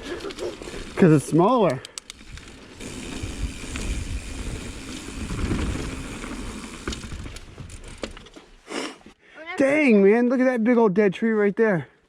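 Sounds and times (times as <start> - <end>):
bicycle light rattles: 0.0 - 8.5
bicycle tyres rolling on dirt: 0.0 - 9.1.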